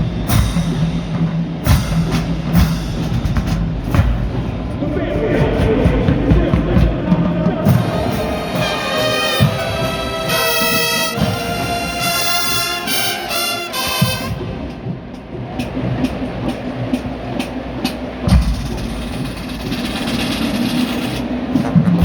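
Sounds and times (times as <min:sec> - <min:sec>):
marching drums: 0:00.0 - 0:22.0
brass section playing chords: 0:04.8 - 0:15.0.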